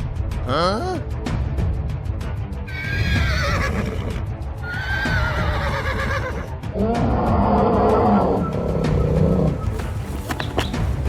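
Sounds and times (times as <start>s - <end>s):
horse whinnying: 2.7s - 9.6s
background music with low beat: 6.6s - 11.0s.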